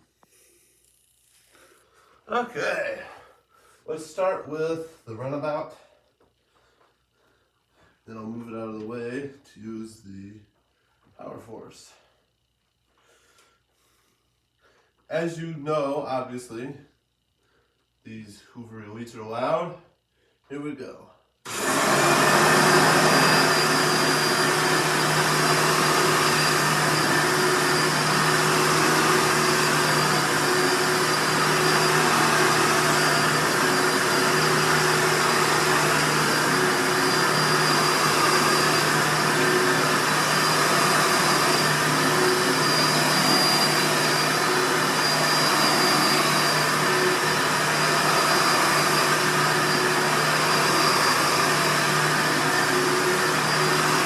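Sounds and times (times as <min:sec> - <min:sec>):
upright vacuum cleaner running: 0:21.5 - 0:54.0.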